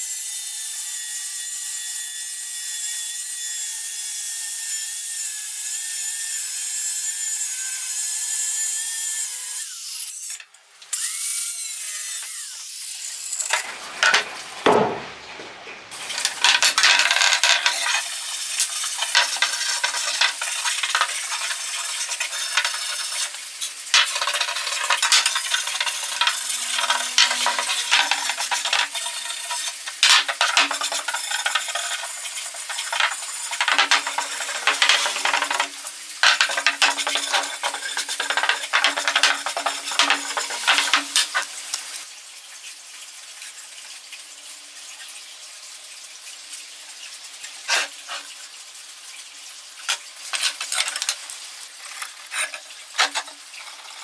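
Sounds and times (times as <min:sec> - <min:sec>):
welding arc crackling: 0:16.0 - 0:42.0.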